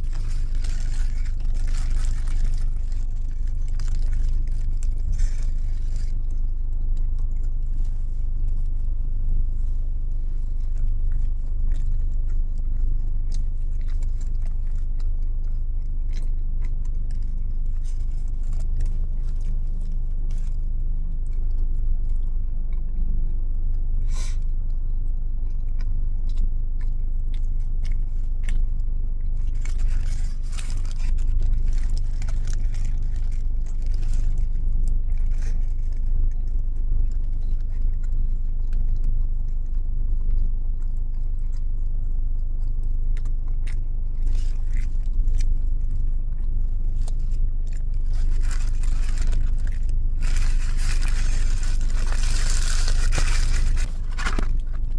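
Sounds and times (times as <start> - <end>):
paper wrapper rustling: 0.0 - 9.0, 29.4 - 36.1, 46.8 - 54.9
chewing and crunching food: 0.0 - 54.9
car cabin rumble: 29.4 - 38.5.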